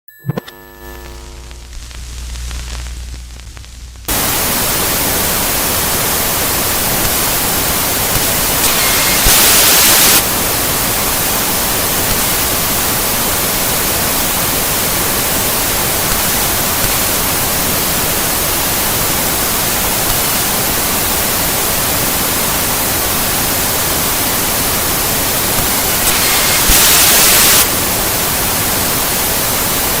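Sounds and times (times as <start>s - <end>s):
buzzing tone: 0.1s - 4.2s
low hum: 0.1s - 4.2s
television static hiss: 0.6s - 30.0s
sharp pops: 8.0s - 10.2s, 25.5s - 27.7s.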